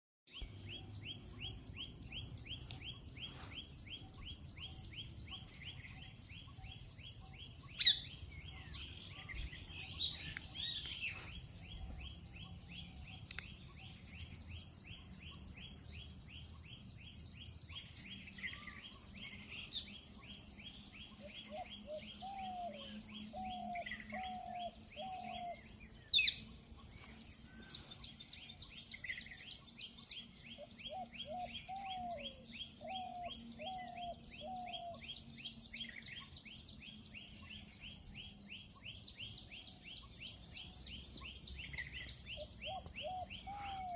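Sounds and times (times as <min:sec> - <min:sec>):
bird chirps: 0:00.3 - 0:43.9
insects trilling: 0:00.4 - 0:43.9
short lower bird calls: 0:41.7 - 0:43.9.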